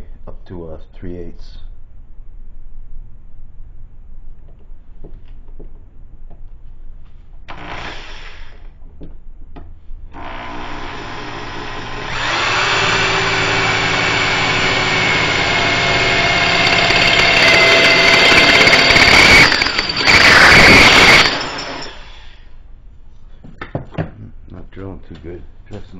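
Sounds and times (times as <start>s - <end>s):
drill grinding on steel: 7.5s - 8.6s, 10.2s - 22.4s
electric drill whining: 7.5s - 8.6s, 10.2s - 22.4s.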